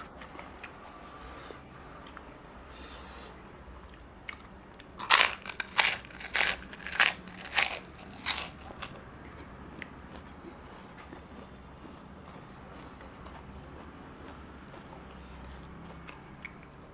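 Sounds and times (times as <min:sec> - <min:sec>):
person chewing crunchy food: 0:03.9 - 0:16.9.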